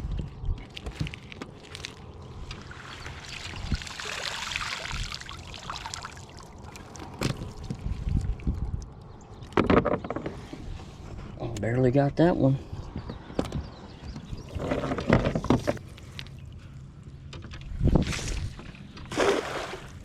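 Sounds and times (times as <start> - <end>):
water splashing and trickling: 0.5 - 9.6, 17.8 - 20.0.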